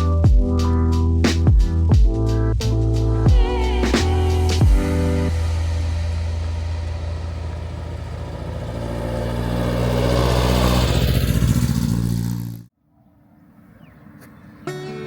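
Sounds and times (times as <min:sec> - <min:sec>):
vehicle engine running: 0:03.0 - 0:12.7.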